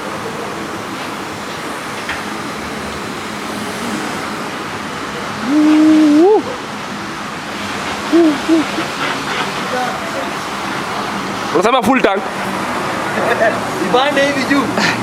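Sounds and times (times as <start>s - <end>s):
vehicle road noise: 0.0s - 15.0s
drawn-out vocal call: 5.4s - 6.6s, 8.0s - 9.4s.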